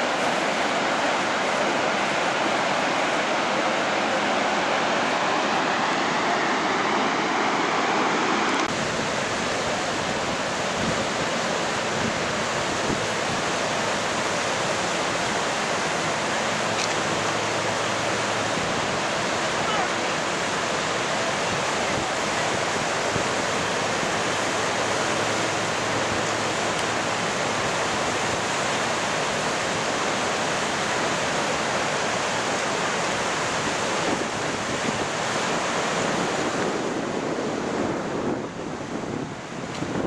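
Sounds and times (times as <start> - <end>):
waterfall roaring: 0.0 - 40.0
wind buffeting microphone: 8.7 - 31.2, 33.0 - 40.0.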